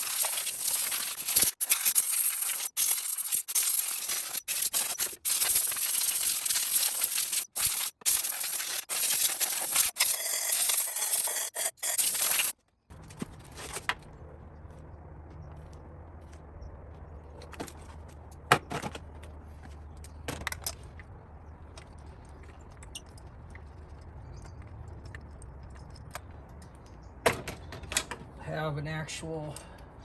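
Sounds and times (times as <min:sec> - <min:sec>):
scratchy rubbing with small clinks: 0:00.0 - 0:12.6
low hum: 0:12.9 - 0:18.5.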